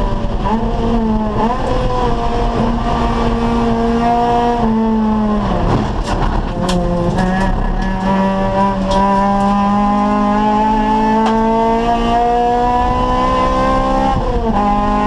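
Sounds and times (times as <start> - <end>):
race car engine running hard: 0.0 - 15.0.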